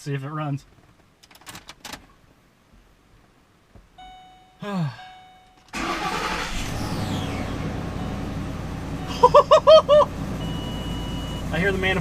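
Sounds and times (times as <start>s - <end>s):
engine starting and idling: 5.7s - 9.2s.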